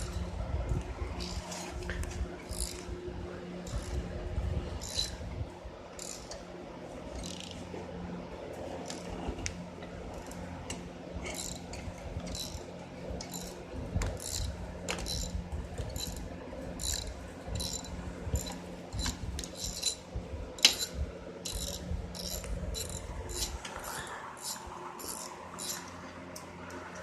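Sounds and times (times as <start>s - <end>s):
metal tool clicking on engine parts: 2.4s - 2.9s, 6.0s - 6.4s, 7.1s - 7.6s, 8.8s - 27.0s.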